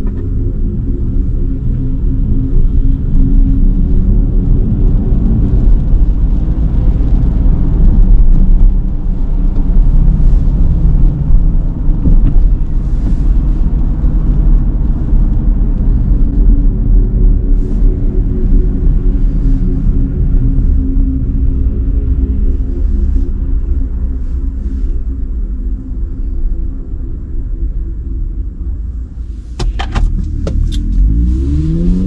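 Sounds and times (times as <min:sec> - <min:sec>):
car road and motor rumble: 0:00.0 - 0:32.0.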